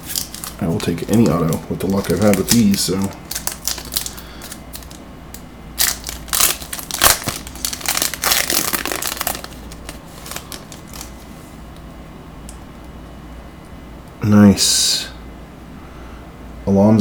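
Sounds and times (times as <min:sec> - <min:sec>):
plastic wrapper crinkling: 0:00.0 - 0:11.4.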